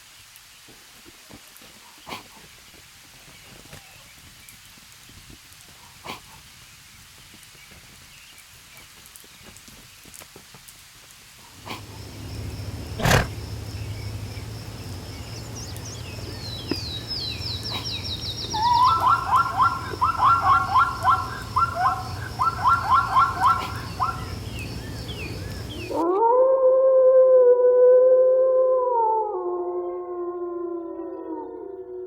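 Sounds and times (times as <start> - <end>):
high falling animal calls: 11.4 - 26.4
chattering animal calls: 16.0 - 26.0.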